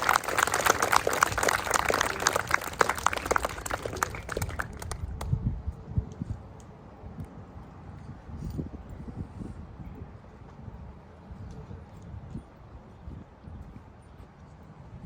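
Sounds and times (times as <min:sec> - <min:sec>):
audience applauding: 0:00.0 - 0:05.2.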